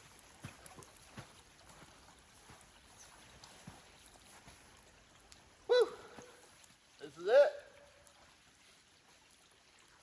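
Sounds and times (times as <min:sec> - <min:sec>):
faint footsteps in snow: 0:00.0 - 0:04.8.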